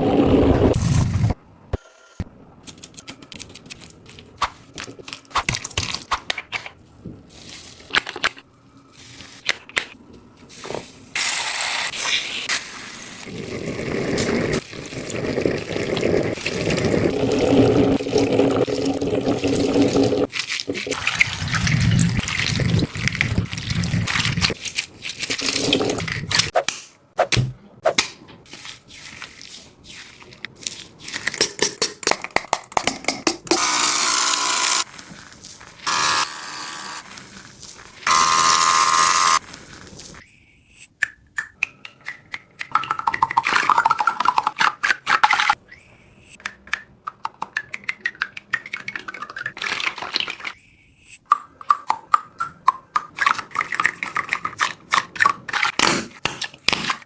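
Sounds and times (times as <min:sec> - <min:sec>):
squishy toys crunching and squelching: 0:20.2 - 0:26.6, 0:28.5 - 0:32.2, 0:37.0 - 0:38.6.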